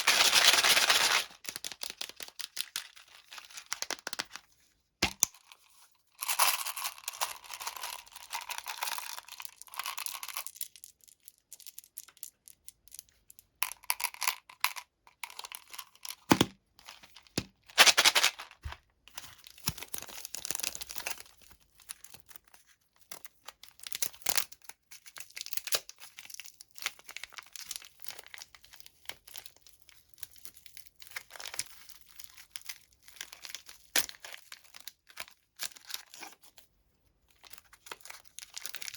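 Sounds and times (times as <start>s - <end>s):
plastic wrappers crinkling: 0.0s - 4.4s, 16.8s - 22.6s.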